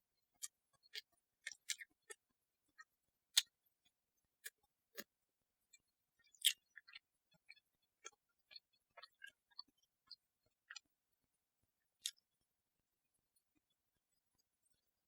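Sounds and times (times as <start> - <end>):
chewing clicks and smacks: 0.4 - 2.2, 6.2 - 10.8, 12.0 - 12.2.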